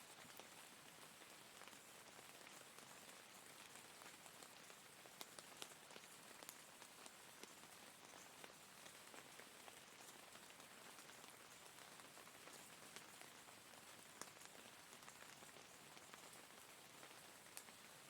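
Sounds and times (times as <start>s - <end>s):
faint rain hiss: 0.0s - 18.0s.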